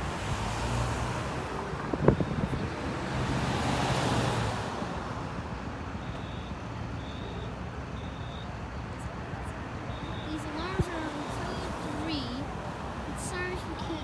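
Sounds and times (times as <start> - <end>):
vehicle passing: 0.0 - 6.0, 8.6 - 14.0
street traffic noise: 0.0 - 14.0
wind on microphone: 1.7 - 3.0
faint high fire alarm beep: 6.0 - 8.6, 9.9 - 10.8.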